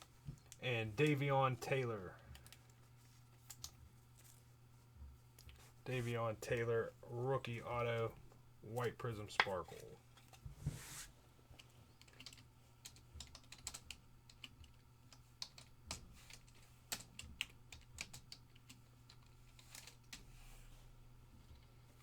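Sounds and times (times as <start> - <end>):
low steady hum: 0.0 - 22.0
keyboard typing: 12.0 - 19.2.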